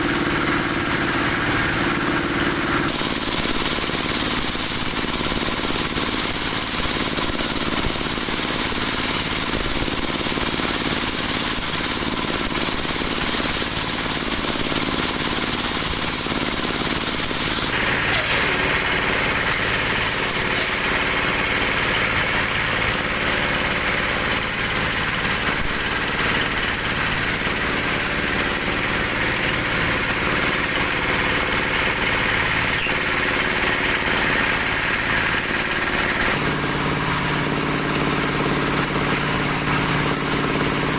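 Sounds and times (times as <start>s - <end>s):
dowel machine running: 0.0s - 40.9s.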